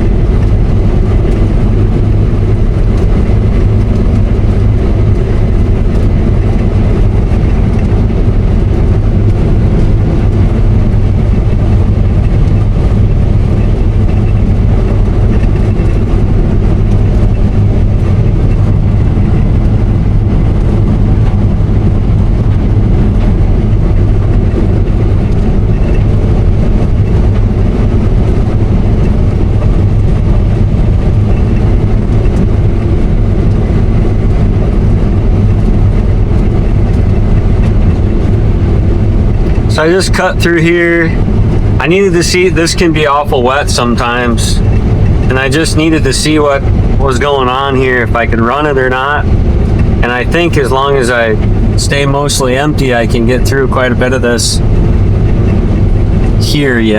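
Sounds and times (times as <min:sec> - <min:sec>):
combine harvester engine drone: 0:00.0 - 0:56.9.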